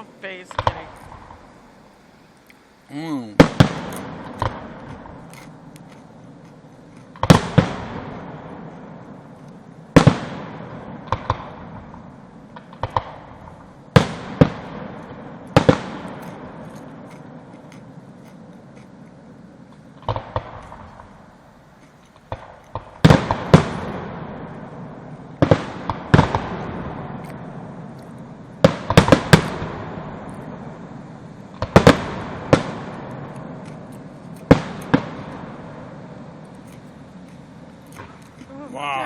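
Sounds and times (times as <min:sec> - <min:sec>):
fireworks booming with echo: 0:00.0 - 0:39.0.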